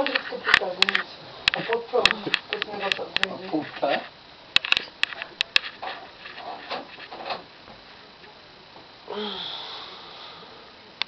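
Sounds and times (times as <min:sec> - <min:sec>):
person breathy vocal sound: 0:09.1 - 0:10.8.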